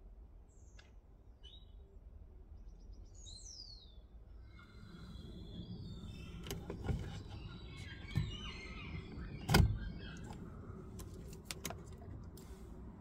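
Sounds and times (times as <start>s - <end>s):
clicks and knocks of car door parts: 6.4s - 8.6s, 9.2s - 10.4s.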